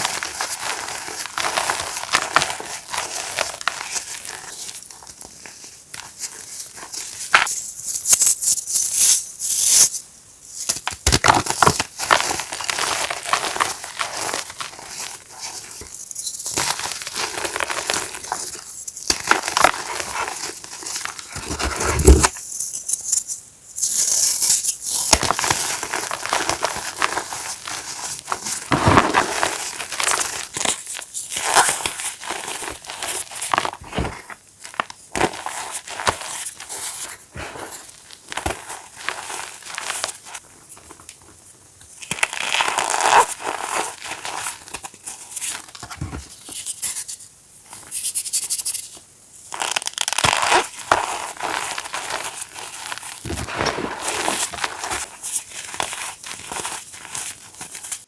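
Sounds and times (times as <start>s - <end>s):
chalk crunching by hand: 16.9s - 22.4s, 49.6s - 58.0s.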